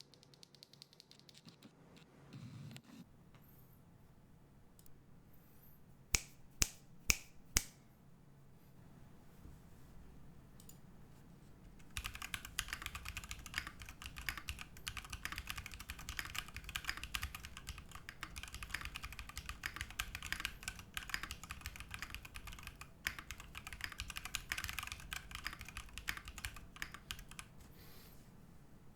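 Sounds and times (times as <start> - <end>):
fast mechanical keyboard typing: 11.8 - 27.5.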